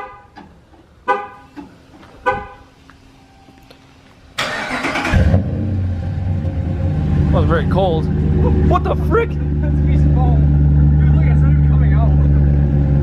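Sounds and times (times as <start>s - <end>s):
car horn chirps: 0.0s - 0.4s, 1.0s - 1.5s, 2.2s - 3.5s.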